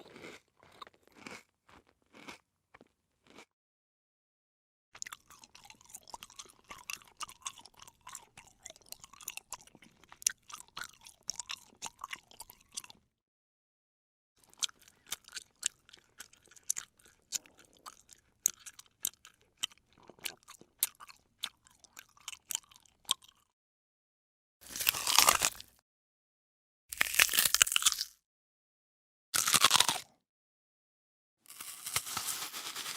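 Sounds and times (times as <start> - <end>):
person chewing crunchy food: 0.0 - 3.5, 5.0 - 13.1, 14.4 - 23.5, 24.6 - 25.8, 26.9 - 28.2, 29.4 - 30.2, 31.5 - 32.9.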